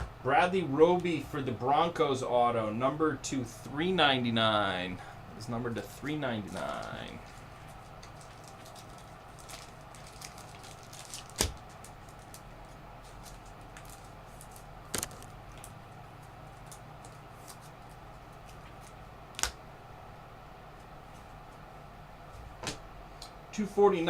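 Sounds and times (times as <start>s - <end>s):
trading cards flipping: 13.1s - 15.7s.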